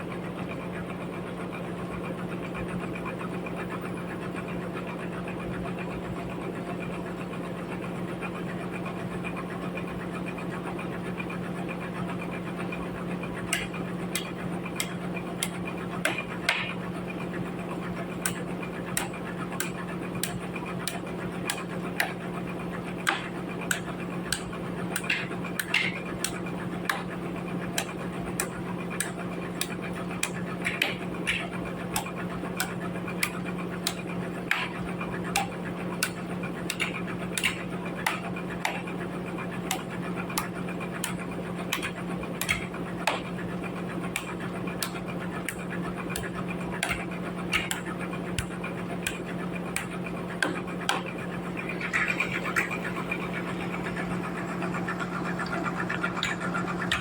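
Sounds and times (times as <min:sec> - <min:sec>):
sawmill machinery humming: 0:00.0 - 0:57.0
sharp irregular ticks: 0:12.6 - 0:57.0.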